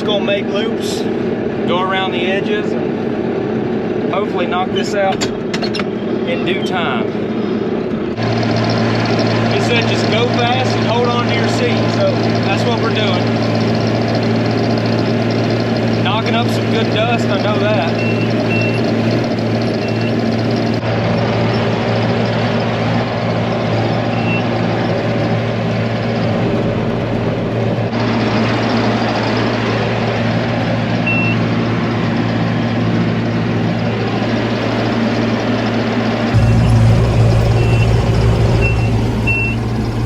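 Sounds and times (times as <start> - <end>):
tractor engine droning: 36.4 - 40.0.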